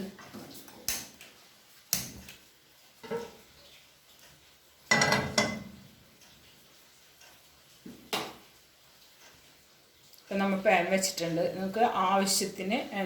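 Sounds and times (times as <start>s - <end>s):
metal frying pan clanking: 3.0s - 3.4s, 4.9s - 5.9s.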